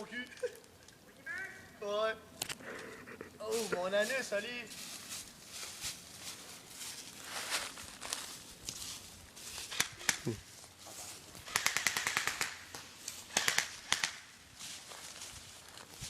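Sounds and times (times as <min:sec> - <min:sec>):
airsoft gun shots and bursts: 0:11.5 - 0:14.3.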